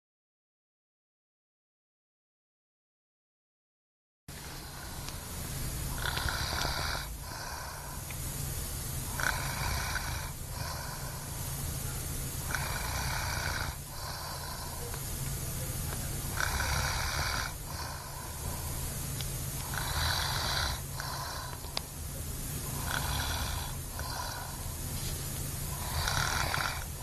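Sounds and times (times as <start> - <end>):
person snoring heavily: 4.3 - 15.2, 16.2 - 21.8, 22.5 - 24.9, 25.5 - 27.0
hissing airy breath: 4.3 - 27.0
steady low hum: 4.3 - 27.0.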